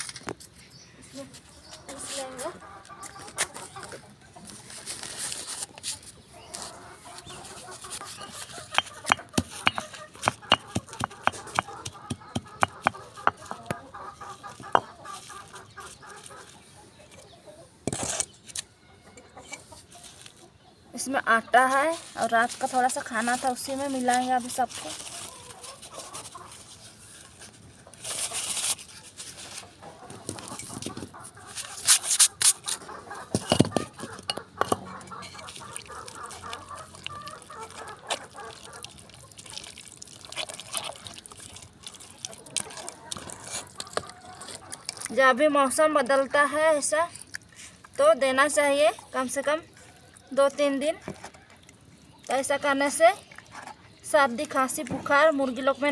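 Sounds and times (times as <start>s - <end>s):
hens clucking: 1.8s - 4.8s, 5.6s - 17.8s, 24.7s - 28.5s, 29.4s - 39.4s, 41.6s - 45.2s
tablets being pounded: 8.7s - 13.4s
rustling: 22.0s - 29.8s.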